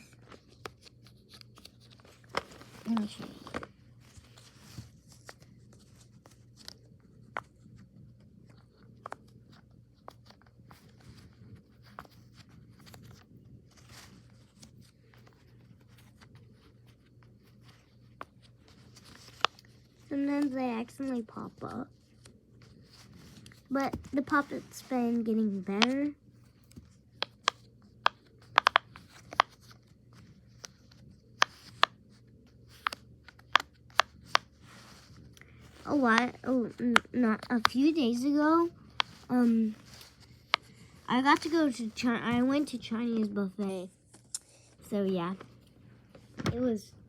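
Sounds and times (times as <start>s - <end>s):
pop-it toy clicks and pops: 28.5s - 29.5s.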